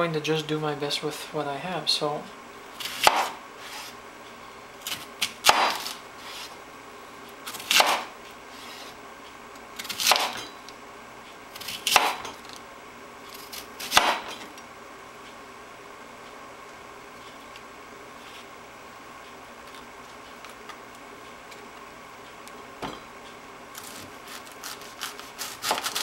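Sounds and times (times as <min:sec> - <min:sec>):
knife cutting on wooden board: 0:07.5 - 0:09.0, 0:09.8 - 0:10.4, 0:11.6 - 0:12.3, 0:13.4 - 0:14.3, 0:23.8 - 0:26.0.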